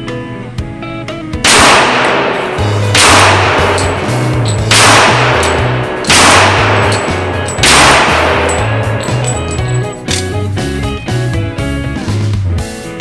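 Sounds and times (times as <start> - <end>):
background music with bass line: 0.0 - 13.0
pistol shots with ringing tail: 1.4 - 9.8.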